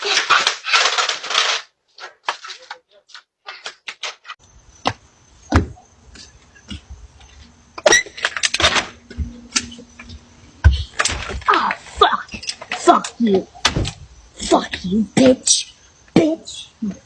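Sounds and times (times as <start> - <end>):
knocks and thumps: 4.8 - 12.7, 13.6 - 14.1
heavy thud: 4.9 - 5.8.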